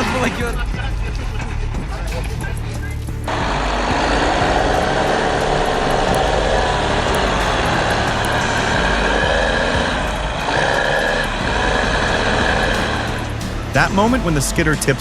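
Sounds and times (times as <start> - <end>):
heavy vehicle engine under load: 3.2 - 15.0.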